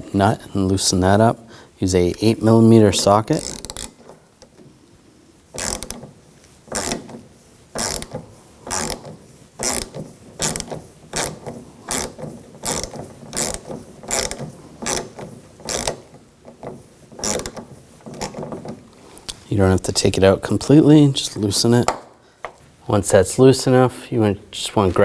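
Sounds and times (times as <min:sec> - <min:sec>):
hand ratchet pawl clicks: 0:03.3 - 0:04.6, 0:05.5 - 0:19.4.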